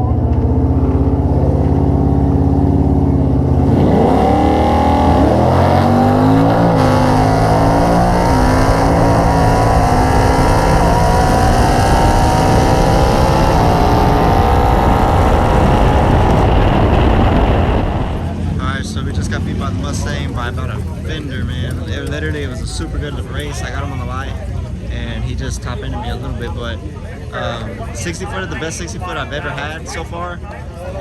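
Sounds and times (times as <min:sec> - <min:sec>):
drag racing cars accelerating: 0:00.0 - 0:26.7.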